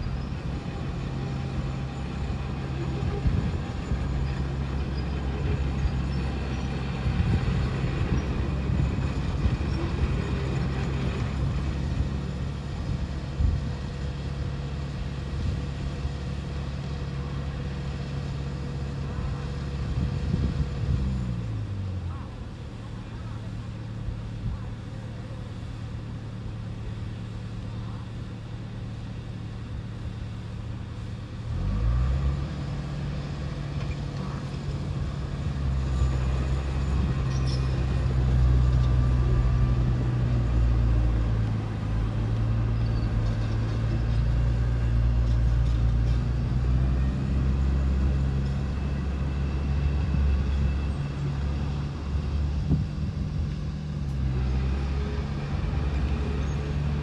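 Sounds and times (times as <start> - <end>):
heavy diesel engine revving: 31.3 - 57.0.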